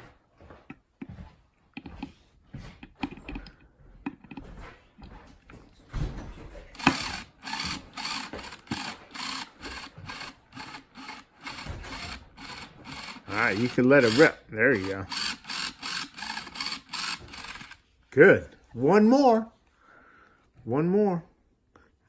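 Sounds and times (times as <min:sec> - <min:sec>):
drill driving a screw into wood: 0:06.8 - 0:17.8.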